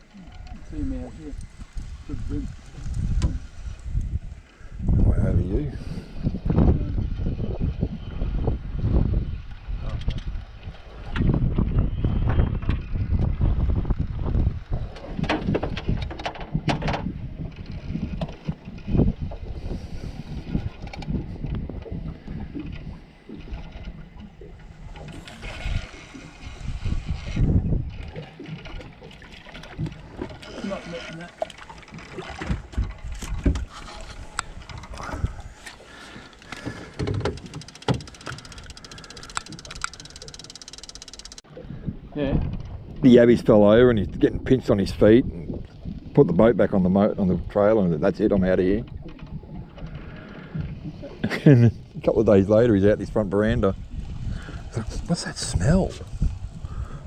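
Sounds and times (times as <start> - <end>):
wind buffeting microphone: 0.0 - 40.7, 41.4 - 57.0
sharp knocks and clicks: 15.0 - 18.6, 36.4 - 41.4
fast even ticking: 37.4 - 41.4.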